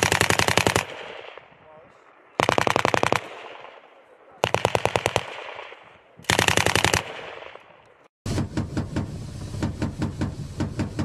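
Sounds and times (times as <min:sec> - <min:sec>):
machine gun bursts: 0:06.3 - 0:07.1.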